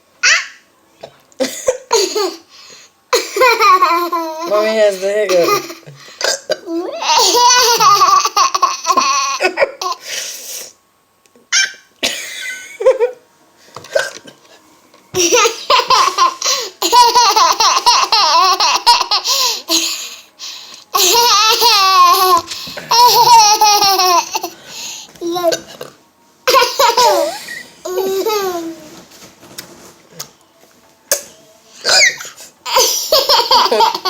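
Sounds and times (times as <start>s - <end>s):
baby laughing: 6.7s - 10.0s, 15.2s - 20.1s, 20.9s - 24.6s, 26.5s - 28.7s, 31.8s - 34.0s.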